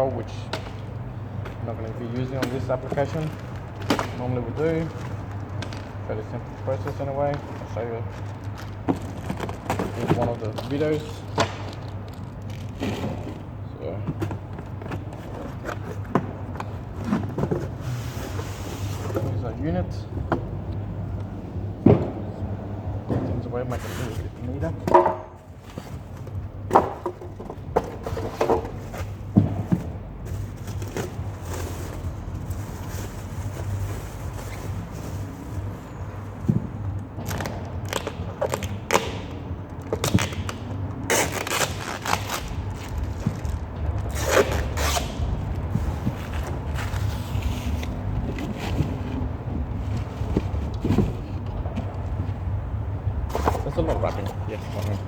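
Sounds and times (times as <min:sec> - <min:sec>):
steady low hum: 0:00.0 - 0:55.0
knocks and rustles of handling: 0:00.1 - 0:55.0
plastic packaging rustling: 0:02.1 - 0:13.5, 0:30.2 - 0:36.4, 0:39.8 - 0:49.3
steady low rumble: 0:19.3 - 0:26.7.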